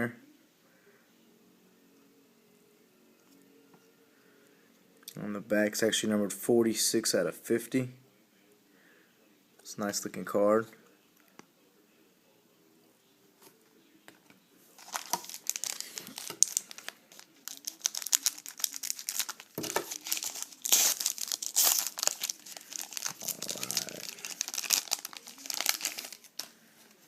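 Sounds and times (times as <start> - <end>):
card pack wrapper crinkling and tearing: 14.8 - 27.0.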